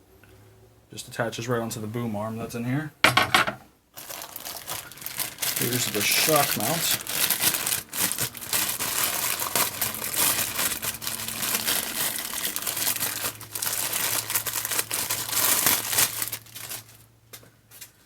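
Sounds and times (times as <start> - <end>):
packaging crinkling: 4.0 - 17.1.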